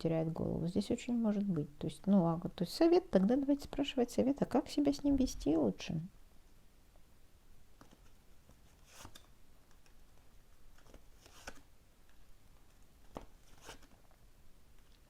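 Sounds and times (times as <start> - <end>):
cards rustling and clicking: 7.8 - 12.2, 13.0 - 14.1.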